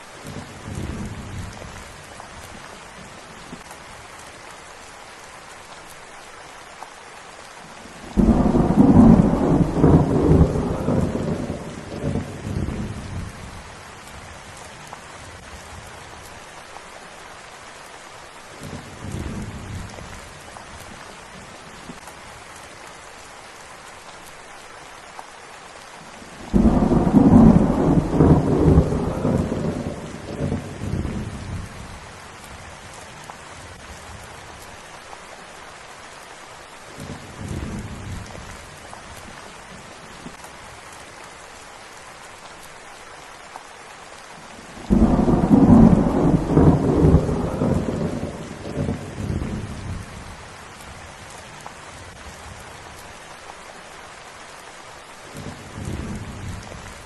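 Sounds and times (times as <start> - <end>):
steady rainfall: 0.0 - 57.0
rolling thunder: 8.1 - 13.4, 26.5 - 31.8, 44.8 - 50.1.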